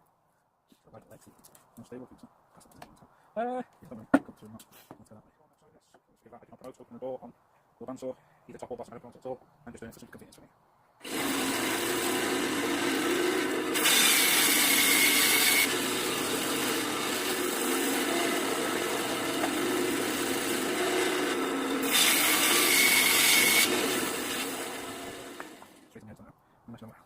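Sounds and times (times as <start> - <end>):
band saw cutting wood: 11.0 - 25.9.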